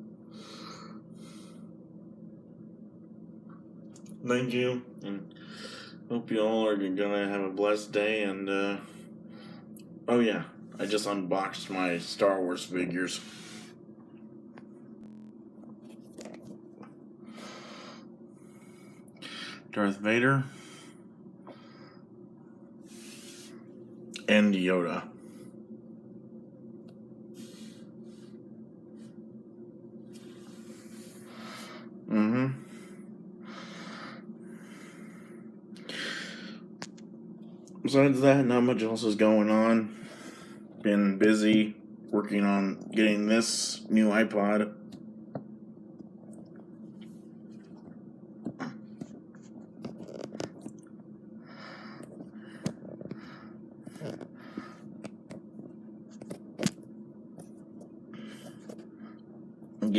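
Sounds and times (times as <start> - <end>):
steady low hum: 0.0 - 59.9
person breathing loudly: 30.2 - 36.7.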